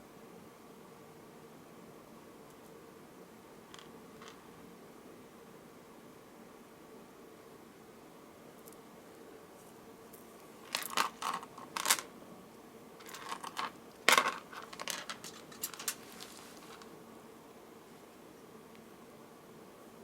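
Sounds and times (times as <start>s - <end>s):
beads clicking and clattering: 3.7s - 4.4s, 10.6s - 12.1s, 13.0s - 16.9s.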